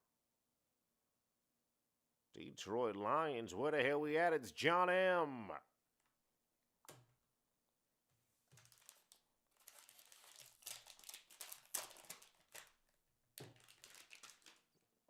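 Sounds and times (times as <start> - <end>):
plastic packaging crinkling: 8.5 - 14.8.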